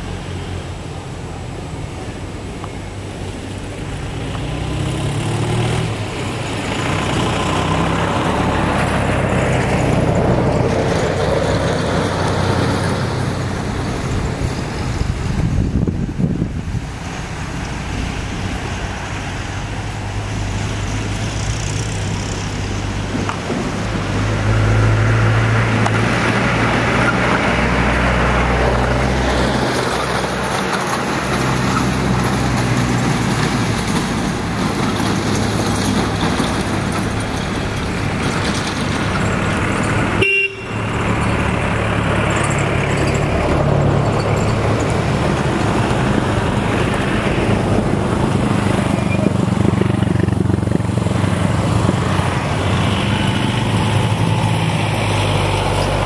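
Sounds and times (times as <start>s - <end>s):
road traffic noise: 0.0s - 56.0s
vehicle horns: 40.2s - 41.0s.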